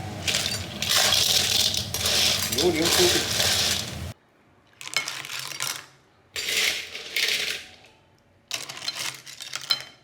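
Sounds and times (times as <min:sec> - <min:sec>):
snail shells clattering in pan: 0:00.0 - 0:04.2.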